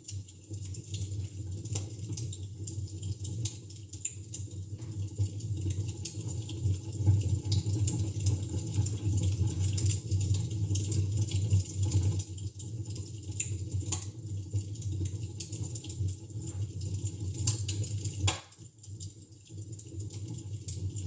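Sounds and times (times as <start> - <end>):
wood fire crackling: 11.6 - 21.0
fire pops and snaps: 17.4 - 19.1.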